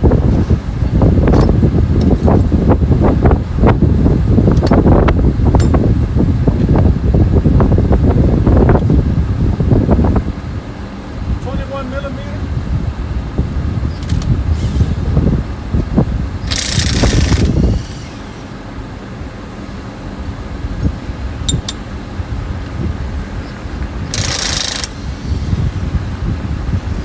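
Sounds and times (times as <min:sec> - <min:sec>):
impact wrench bursts: 0:16.4 - 0:18.5, 0:24.1 - 0:25.6.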